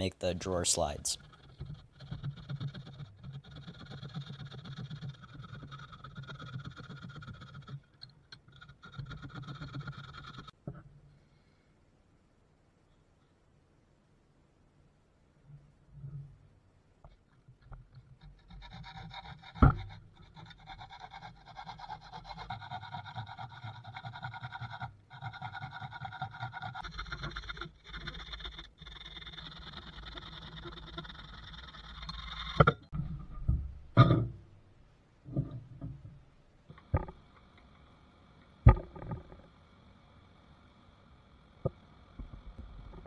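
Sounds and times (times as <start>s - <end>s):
hand tool rasping on wood: 1.2s - 10.5s, 18.2s - 32.7s.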